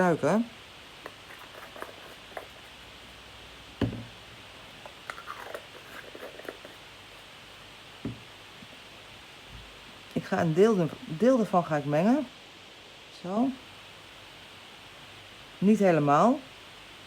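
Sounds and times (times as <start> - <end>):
jars and tools clicking: 1.0 - 2.7, 4.8 - 6.8.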